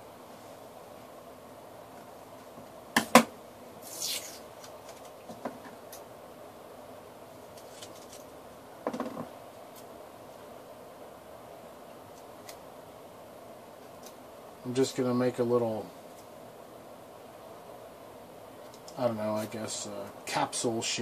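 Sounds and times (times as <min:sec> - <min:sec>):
tape tearing off: 0:03.8 - 0:05.2
paper crinkles: 0:07.5 - 0:08.3.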